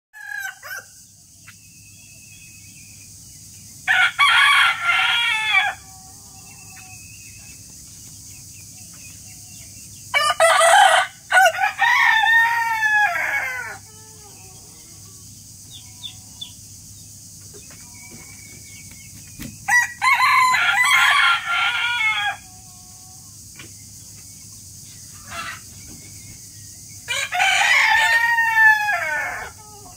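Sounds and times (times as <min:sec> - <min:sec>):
rooster crowing: 0:00.2 - 0:01.0, 0:03.9 - 0:07.0, 0:10.1 - 0:14.8, 0:19.7 - 0:23.1, 0:27.1 - 0:29.9
faint background hum: 0:00.2 - 0:29.9.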